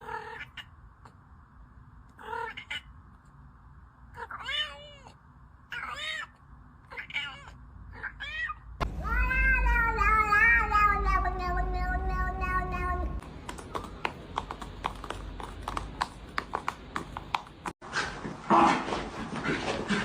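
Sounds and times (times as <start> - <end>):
cat meowing: 4.2 - 13.2.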